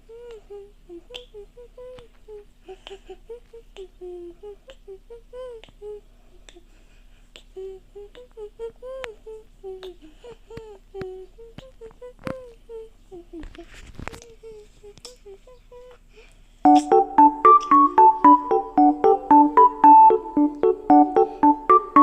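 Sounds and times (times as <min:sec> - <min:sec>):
voice-like hums and babbles: 0:00.0 - 0:06.6, 0:07.4 - 0:16.0, 0:16.7 - 0:22.0.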